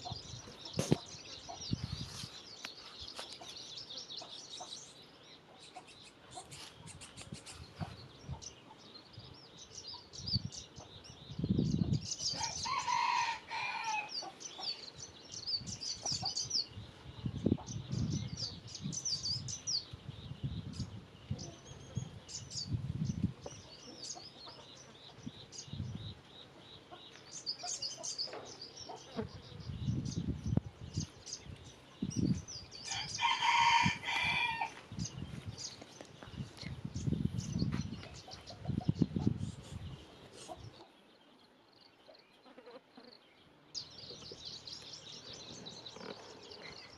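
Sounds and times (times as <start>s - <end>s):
small birds chirping: 0.0s - 46.9s
rooster crowing: 12.4s - 14.2s, 32.9s - 34.8s.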